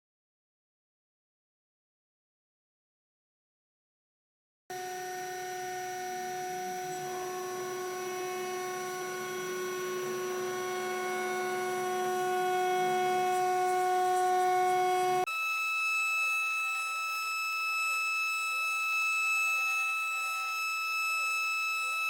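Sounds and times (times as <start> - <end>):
cnc mill spindle whining: 4.7 - 22.0.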